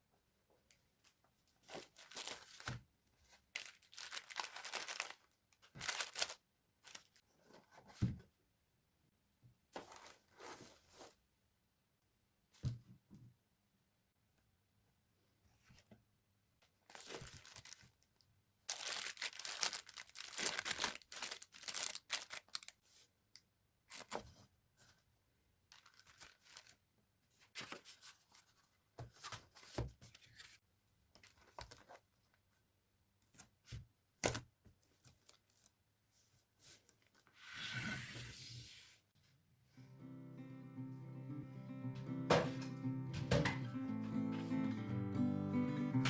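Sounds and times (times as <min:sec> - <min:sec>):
wrapping tearing and rustling: 0:01.7 - 0:02.7, 0:03.3 - 0:07.2, 0:16.9 - 0:22.8, 0:25.7 - 0:26.8.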